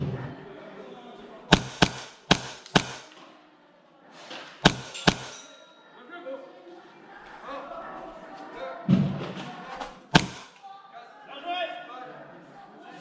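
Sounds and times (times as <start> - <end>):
airsoft gun shots: 1.5 - 3.1, 4.6 - 5.4, 10.2 - 10.6.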